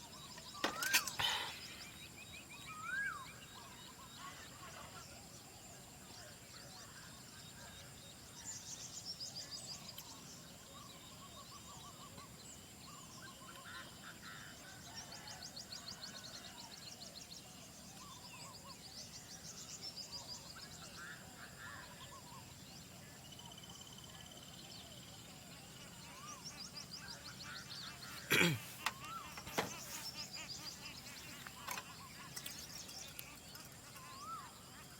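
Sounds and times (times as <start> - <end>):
birds whistling and chirping: 0.0 - 4.0.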